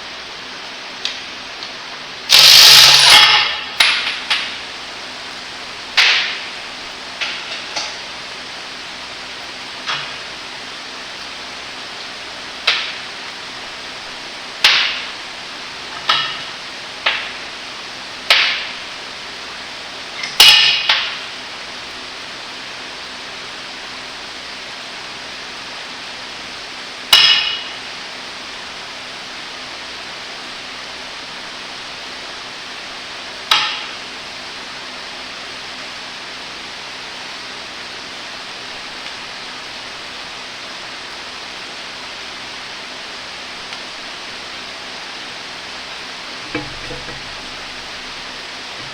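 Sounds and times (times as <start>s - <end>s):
steady hiss: 0.0s - 48.9s
hammer striking metal: 2.3s - 4.4s, 46.5s - 48.9s.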